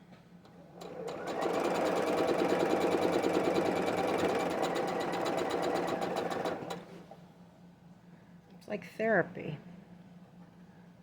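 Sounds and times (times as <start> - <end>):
sewing machine stitching: 0.7 - 7.0.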